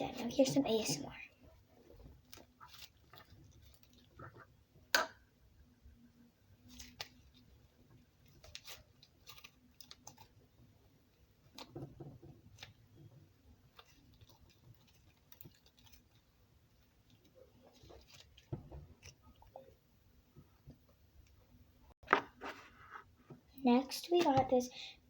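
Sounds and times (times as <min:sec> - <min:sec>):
slime clicking and squishing: 0:06.6 - 0:10.6, 0:12.4 - 0:19.6.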